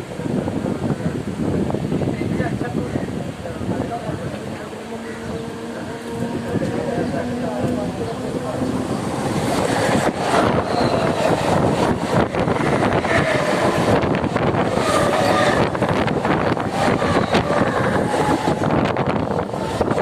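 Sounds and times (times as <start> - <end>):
wind noise on microphone: 0.0 - 20.0
train wheels rattling: 5.4 - 20.0.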